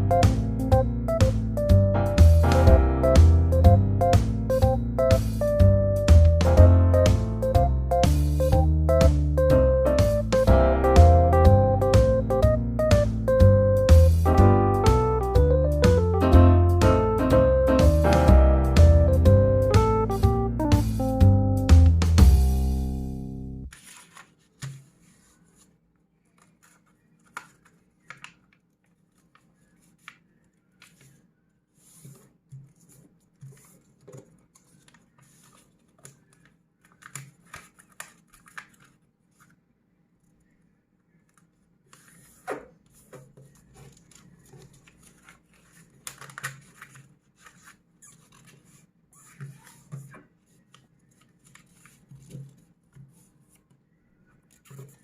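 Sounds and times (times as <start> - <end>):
paper being folded: 23.7 - 39.6, 40.2 - 53.7.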